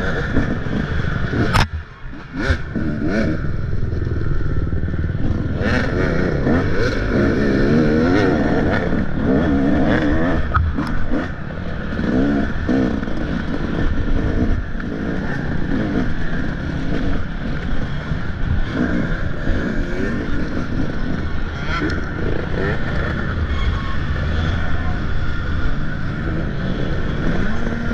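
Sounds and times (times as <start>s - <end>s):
dirt bike engine revving: 0.0s - 27.9s
sharp click: 1.4s - 1.8s.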